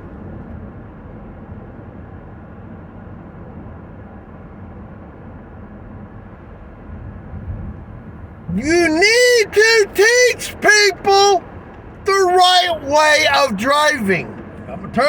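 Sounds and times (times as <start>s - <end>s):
car interior road noise: 8.5s - 15.0s.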